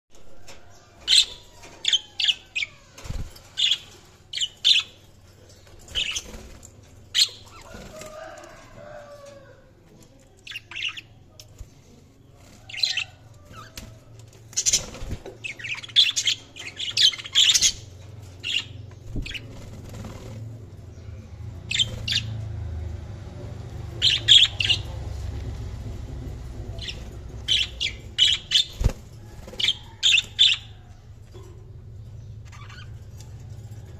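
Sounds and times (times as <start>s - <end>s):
budgerigars chirping: 24.0s - 25.0s, 26.7s - 28.8s, 29.6s - 30.8s.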